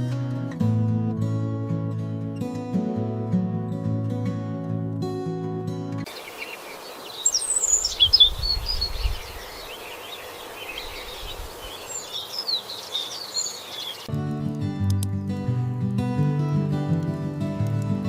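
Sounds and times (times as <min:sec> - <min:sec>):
acoustic guitar music: 0:00.0 - 0:06.1, 0:14.1 - 0:18.0
birds chirping and singing: 0:06.1 - 0:14.1
outdoor ambience hiss: 0:06.1 - 0:14.1.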